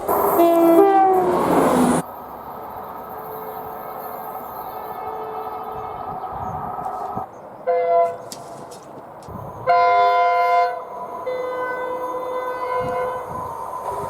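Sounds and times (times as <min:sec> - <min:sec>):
train horn: 0:00.2 - 0:01.9, 0:05.0 - 0:06.1, 0:07.7 - 0:08.2, 0:09.6 - 0:13.4.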